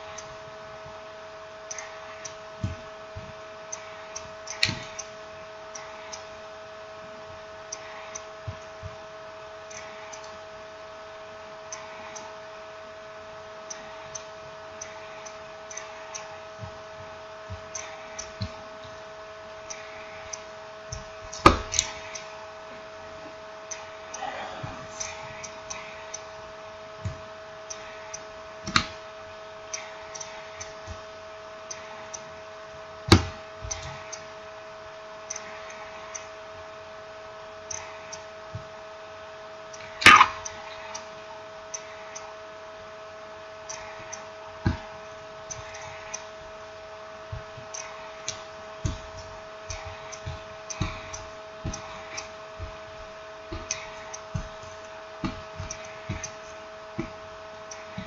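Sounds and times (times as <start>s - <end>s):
two-tone hum: 0.0s - 58.0s
small clicks and taps: 27.0s - 29.0s, 33.1s - 34.3s, 47.3s - 58.0s.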